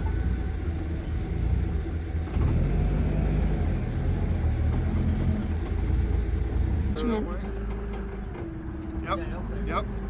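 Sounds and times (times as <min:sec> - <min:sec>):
engine droning under load: 0:00.0 - 0:10.0.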